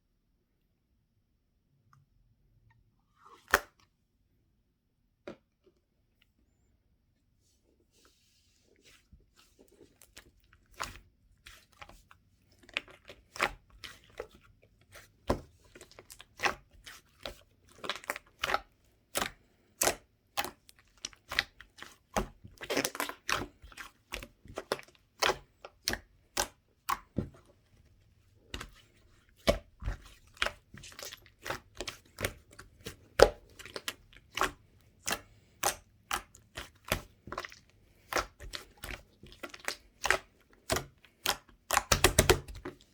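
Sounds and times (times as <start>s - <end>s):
slime squished by hand: 9.8s - 27.6s, 28.5s - 42.9s.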